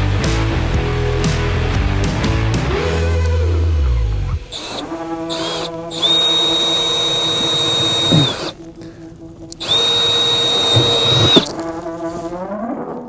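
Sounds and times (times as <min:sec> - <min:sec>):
power drill drilling: 0:04.4 - 0:08.6, 0:09.5 - 0:12.3.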